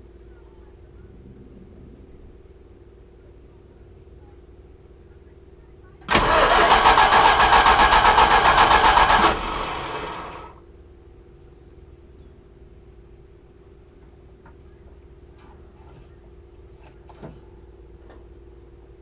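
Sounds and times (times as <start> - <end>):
engine turning over: 6.1 - 10.6.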